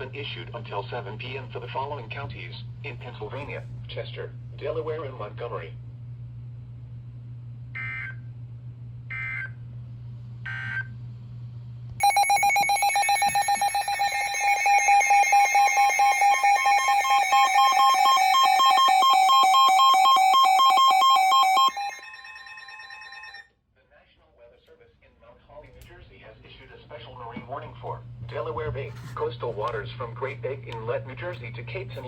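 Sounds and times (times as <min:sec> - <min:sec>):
digital code chirps: 0:12.0 - 0:23.4
pulsing two-tone alarm: 0:12.0 - 0:23.4.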